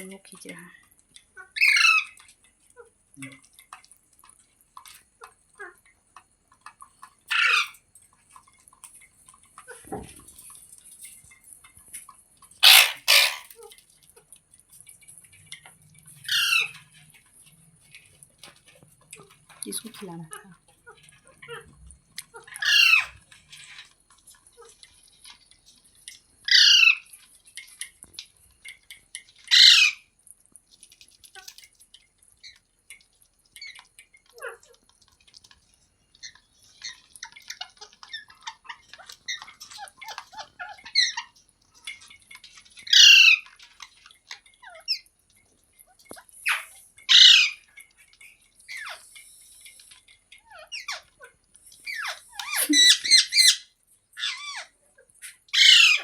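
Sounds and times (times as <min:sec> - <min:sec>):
soft chirps and chatter: 0:00.0 - 0:30.2, 0:30.8 - 0:56.0
parrot squawking: 0:01.4 - 0:02.2, 0:07.3 - 0:07.8, 0:12.6 - 0:13.8, 0:16.2 - 0:17.0, 0:22.3 - 0:23.8, 0:26.5 - 0:27.1, 0:29.5 - 0:30.0, 0:42.8 - 0:43.5, 0:46.4 - 0:47.6, 0:51.9 - 0:56.0.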